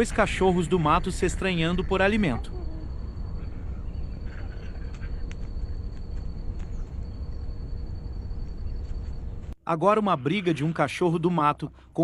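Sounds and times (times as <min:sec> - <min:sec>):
steady low rumble: 0:00.0 - 0:09.6.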